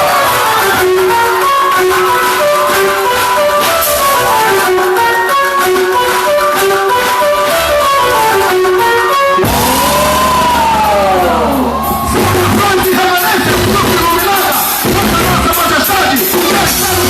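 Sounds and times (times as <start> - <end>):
plucked guitar-like melody: 0.2 - 14.0
long rising and falling tone: 9.2 - 12.6
low bass: 9.4 - 14.0.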